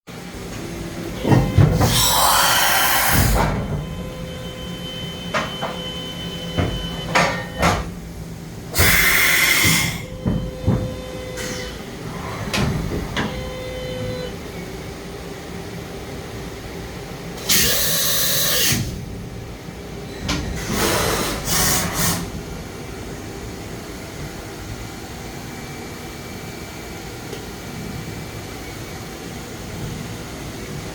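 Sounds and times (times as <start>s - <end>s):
machining center humming: 0.1s - 20.7s, 22.2s - 30.9s
loud hissing bursts: 1.9s - 3.4s.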